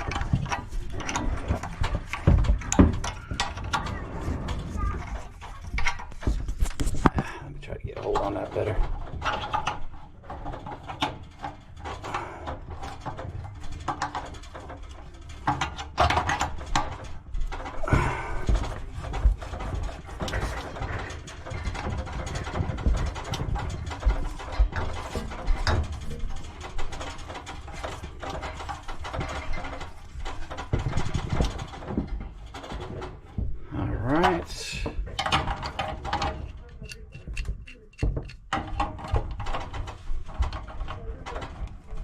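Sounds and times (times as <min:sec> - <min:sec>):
wrench and hand tools clinking: 0:34.8 - 0:39.8.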